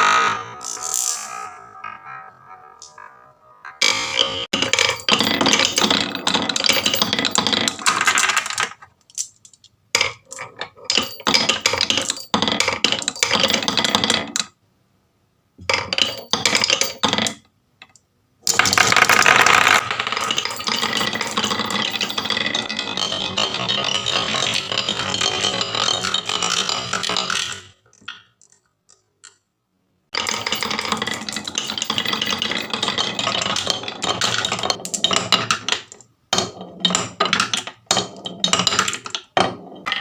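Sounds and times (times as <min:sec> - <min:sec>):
marbles rattling down a run: 0:04.5 - 0:08.8, 0:10.0 - 0:14.4, 0:18.5 - 0:27.8, 0:30.2 - 0:35.8.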